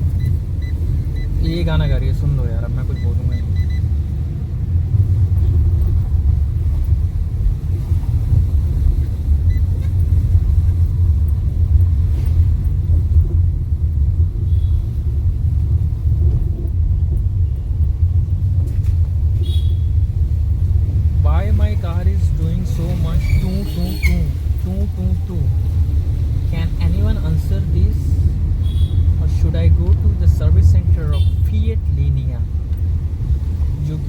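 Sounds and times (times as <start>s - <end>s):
road and engine rumble: 0.0s - 34.0s
dashboard squeaks and rattles: 23.0s - 24.5s.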